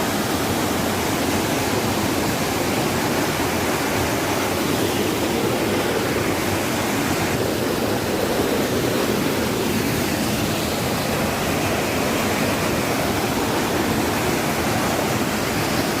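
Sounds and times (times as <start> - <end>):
rushing water: 0.0 - 16.0.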